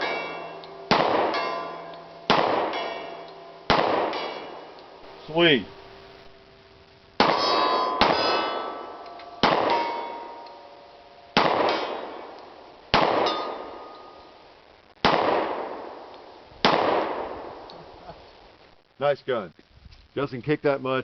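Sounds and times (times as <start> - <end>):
pistol shots: 0.0 - 1.7, 2.3 - 4.8, 7.2 - 10.5, 11.4 - 14.1, 15.0 - 17.6
gunshot echo: 0.0 - 4.8, 7.2 - 10.4, 11.4 - 14.0, 15.0 - 17.6
steel target ringing: 0.0 - 6.0, 7.2 - 12.4, 13.0 - 14.4.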